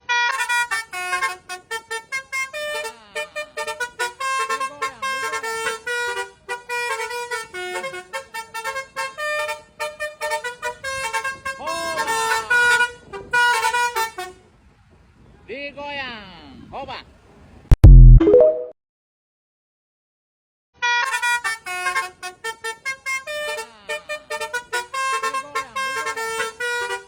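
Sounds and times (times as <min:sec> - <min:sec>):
musical horn playing a tune: 0:00.1 - 0:14.4, 0:20.9 - 0:27.0.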